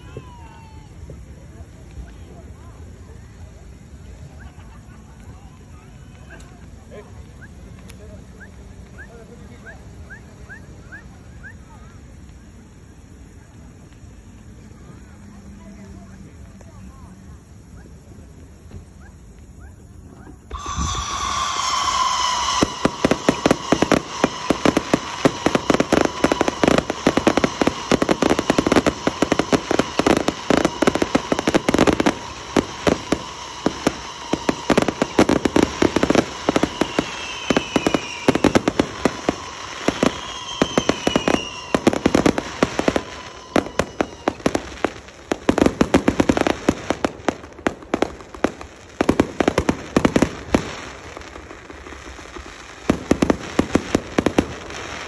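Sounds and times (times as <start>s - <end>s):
fireworks bangs and crackles: 0.0s - 55.0s
falling whistles: 5.8s - 11.9s, 19.6s - 47.0s
steady high tone: 20.5s - 44.2s.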